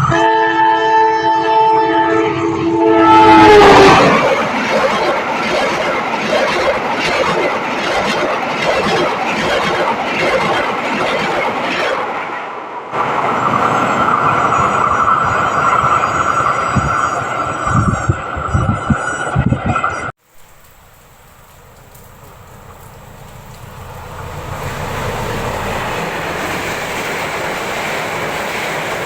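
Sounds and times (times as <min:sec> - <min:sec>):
train rushing: 0:00.0 - 0:29.0
wheels clacking over rail joints: 0:20.3 - 0:29.0.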